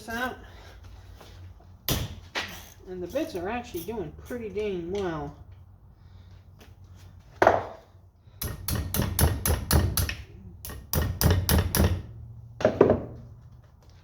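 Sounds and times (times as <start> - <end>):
hammer striking metal bit: 8.4 - 12.1.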